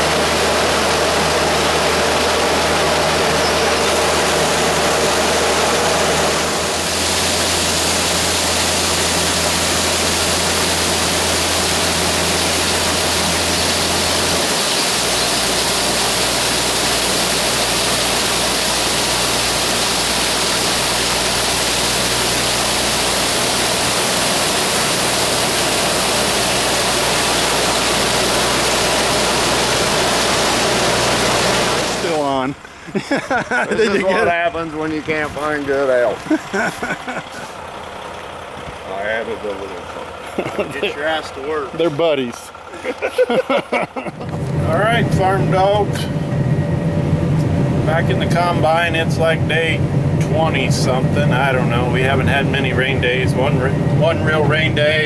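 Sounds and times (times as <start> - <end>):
beans pouring hiss: 0.0 - 32.1
engine humming: 0.0 - 55.0.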